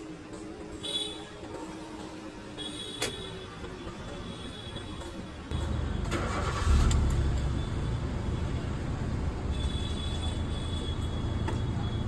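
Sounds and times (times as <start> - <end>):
car engine starting and idling: 5.5 - 9.6.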